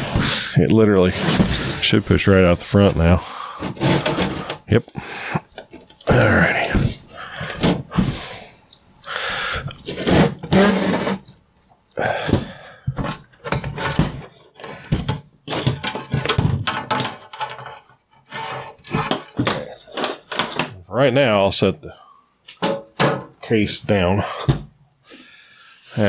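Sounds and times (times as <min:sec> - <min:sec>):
metal scraping and sliding: 0:00.0 - 0:04.7, 0:09.8 - 0:11.3, 0:13.0 - 0:20.7
metal knocks and clunks: 0:22.5 - 0:23.4.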